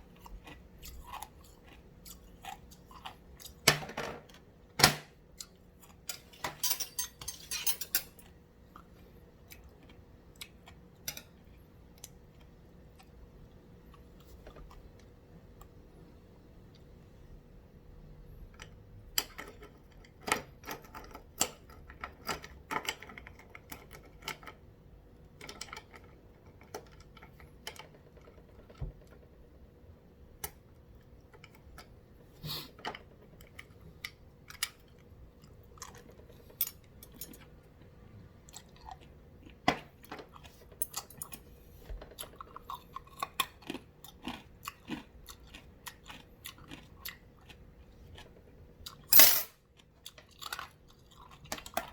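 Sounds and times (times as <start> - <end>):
person chewing and crunching ice: 0.0 - 3.6, 33.4 - 37.5, 38.4 - 41.5, 42.1 - 49.1, 49.7 - 51.9.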